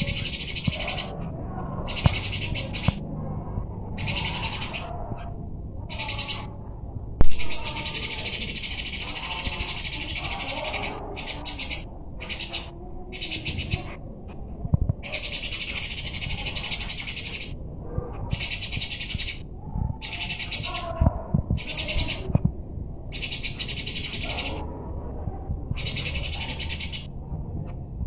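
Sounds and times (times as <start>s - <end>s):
bird buzzy trilling: 0.0s - 3.0s, 3.9s - 5.3s, 7.4s - 13.9s, 15.0s - 17.6s, 18.3s - 19.4s, 20.0s - 20.9s, 23.1s - 24.6s
bird chirps: 1.9s - 3.0s, 23.1s - 24.6s.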